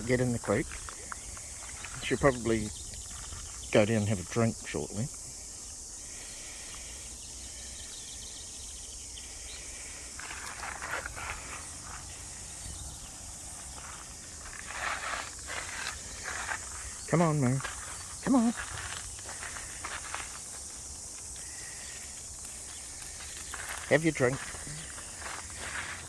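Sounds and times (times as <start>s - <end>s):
creek hissing: 0.0s - 26.0s.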